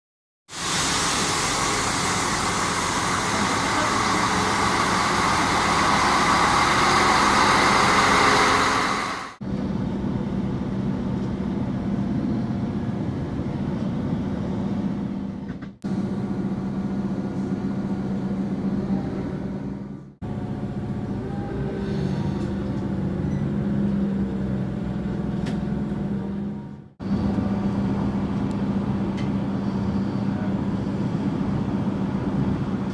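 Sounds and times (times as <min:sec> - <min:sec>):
train rushing noise: 0:00.5 - 0:12.2
train hum with low engine tone: 0:00.5 - 0:32.9.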